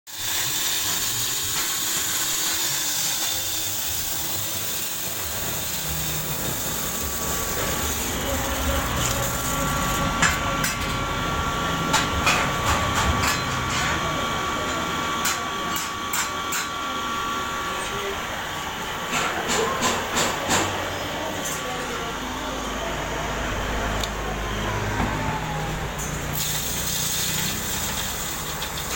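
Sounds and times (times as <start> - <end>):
flour mill running: 0.1 - 28.9.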